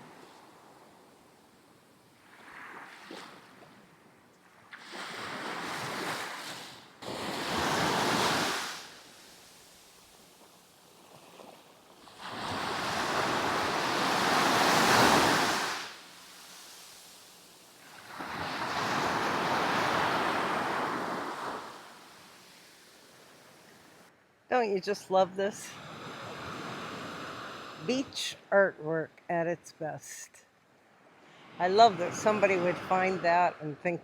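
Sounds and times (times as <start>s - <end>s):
waves breaking on sand: 4.6s - 24.0s.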